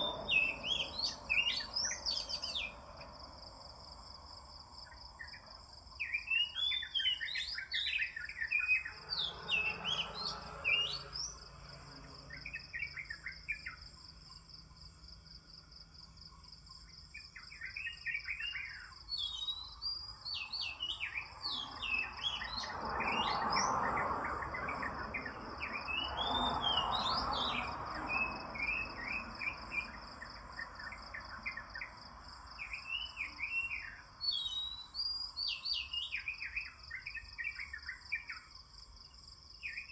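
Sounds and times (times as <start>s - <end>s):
bird singing whistled phrases: 0.0s - 2.8s, 6.0s - 11.4s, 17.4s - 23.7s, 25.6s - 30.0s, 32.6s - 38.4s.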